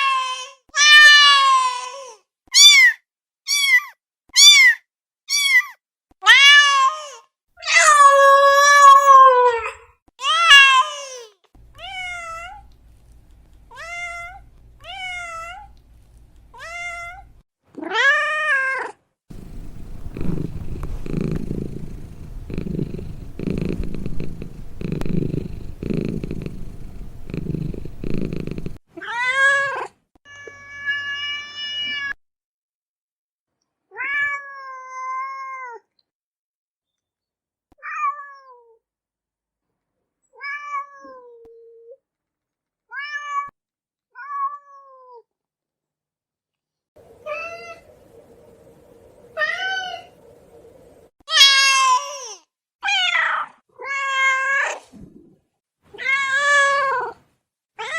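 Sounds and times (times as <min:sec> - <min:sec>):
cat purring: 0:19.3 - 0:28.8
cats meowing: 0:19.3 - 0:28.8.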